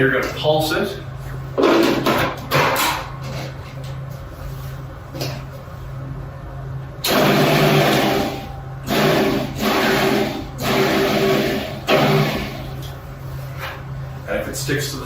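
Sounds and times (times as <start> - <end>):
food processor pulsing: 7.1 - 12.8.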